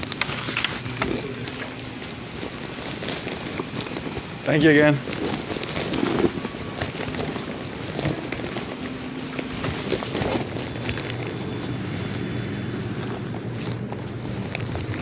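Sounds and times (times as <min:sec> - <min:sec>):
vehicle engine passing: 0:10.1 - 0:15.0.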